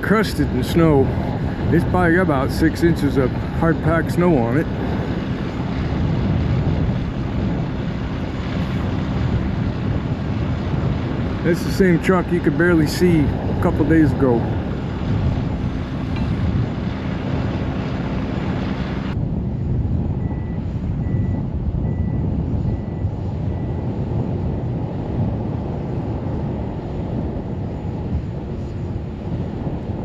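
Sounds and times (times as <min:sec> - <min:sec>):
heavy low engine rumble: 0:00.0 - 0:30.0
wind buffeting microphone: 0:00.0 - 0:30.0
vehicle backup alarm beeping: 0:20.2 - 0:23.9.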